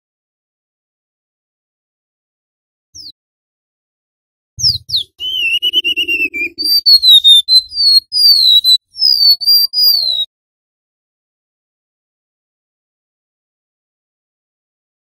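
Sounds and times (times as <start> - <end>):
bird singing high whistles: 4.6 - 10.3.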